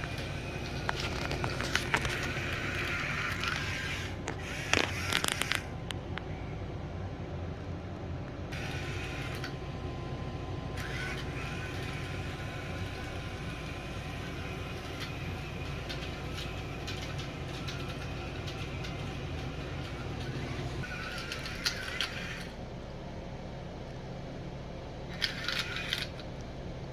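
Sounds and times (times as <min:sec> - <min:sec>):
electric motors whirring: 0:00.0 - 0:06.0, 0:08.5 - 0:22.6, 0:25.2 - 0:26.2.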